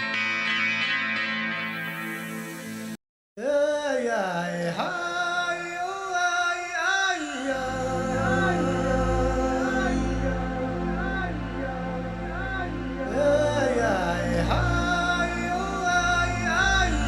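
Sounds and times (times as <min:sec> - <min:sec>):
music: 0:00.0 - 0:03.0, 0:07.5 - 0:17.0
person singing sliding notes: 0:07.4 - 0:17.0
deep bass: 0:07.6 - 0:17.0.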